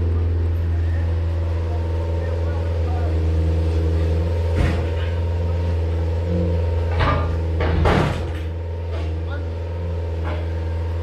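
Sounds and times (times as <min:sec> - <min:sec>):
heavy equipment engine humming: 0:00.0 - 0:11.0
sharp knocks: 0:06.9 - 0:08.5.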